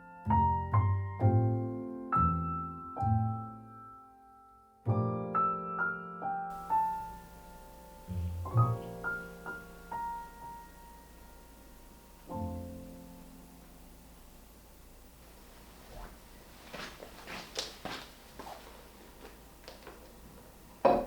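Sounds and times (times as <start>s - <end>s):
slow piano music: 0.0s - 15.0s.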